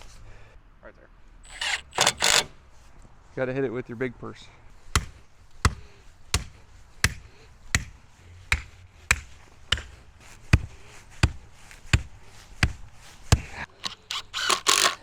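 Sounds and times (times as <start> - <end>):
hammer striking wooden stake: 8.6 - 9.9.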